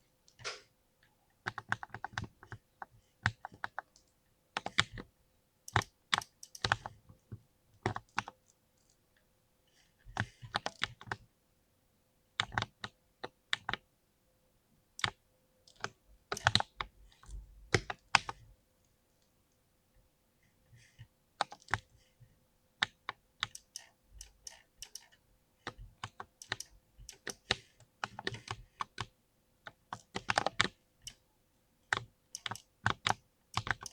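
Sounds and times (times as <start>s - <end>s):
mechanical keyboard typing: 5.7s - 7.0s, 15.0s - 16.8s, 22.8s - 25.2s, 26.0s - 29.1s, 29.9s - 31.2s, 31.9s - 33.9s.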